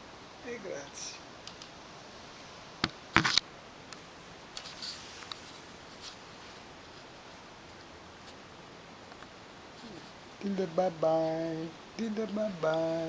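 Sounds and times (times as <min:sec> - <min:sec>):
room hiss: 0:00.0 - 0:13.0.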